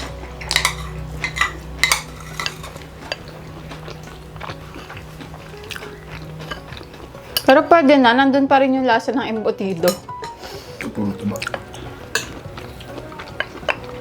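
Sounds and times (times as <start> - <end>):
cutlery clinking on plates: 0.0 - 3.3, 9.8 - 10.4, 11.4 - 12.5.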